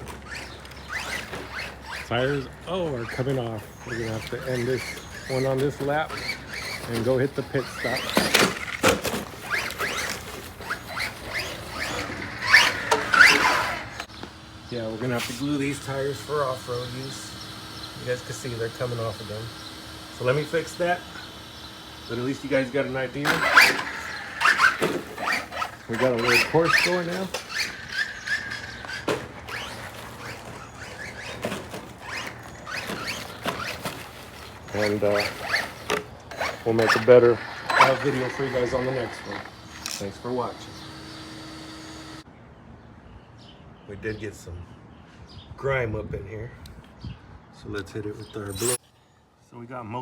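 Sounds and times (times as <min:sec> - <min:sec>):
electric motor whining in bursts: 0:00.0 - 0:42.3, 0:48.4 - 0:48.8.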